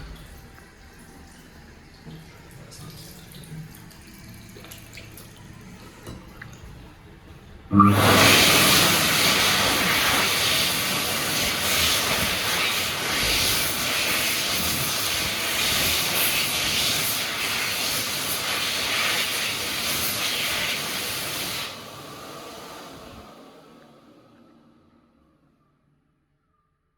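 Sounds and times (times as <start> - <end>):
hand dryer running: 7.7 - 24.5.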